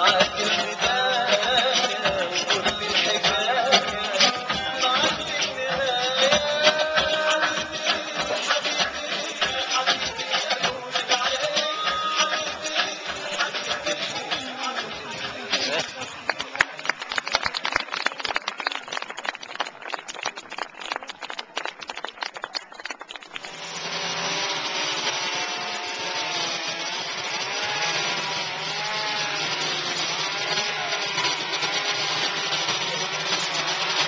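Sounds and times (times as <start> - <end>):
chainsaw cutting wood: 0.0 - 16.2, 23.3 - 34.0.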